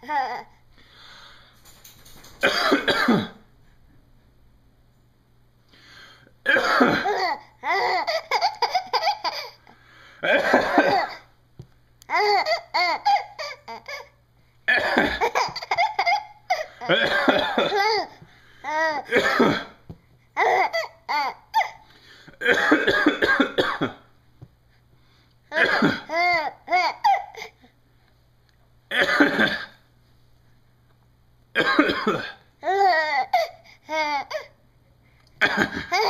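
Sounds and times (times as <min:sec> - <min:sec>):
man fake coughing: 0:02.4 - 0:03.4, 0:06.5 - 0:07.3, 0:10.2 - 0:11.2, 0:14.7 - 0:15.8, 0:16.8 - 0:18.0, 0:19.1 - 0:19.8, 0:22.4 - 0:24.0, 0:25.5 - 0:26.2, 0:28.9 - 0:29.8, 0:31.6 - 0:32.4, 0:35.4 - 0:36.0.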